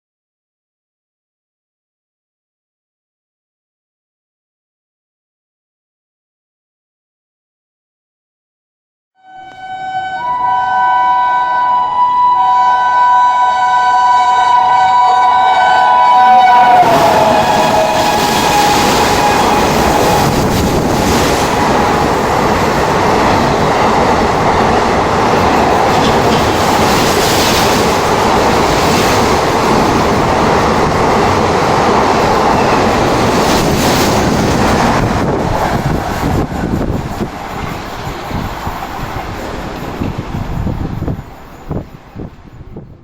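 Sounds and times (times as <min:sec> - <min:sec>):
train horn: 0:09.2 - 0:20.6
train passing at high speed: 0:09.3 - 0:43.0
rail-joint clatter: 0:16.8 - 0:42.8.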